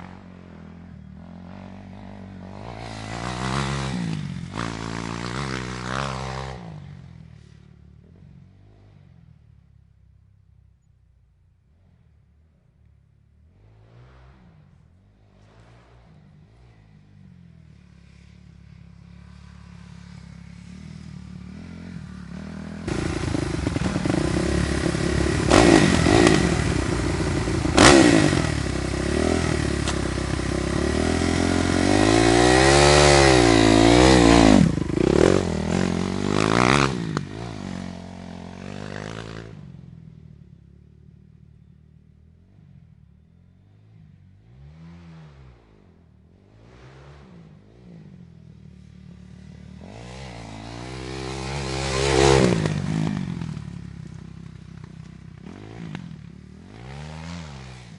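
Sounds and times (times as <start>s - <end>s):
dirt bike engine revving: 1.2s - 7.0s, 13.5s - 39.9s, 44.2s - 57.9s.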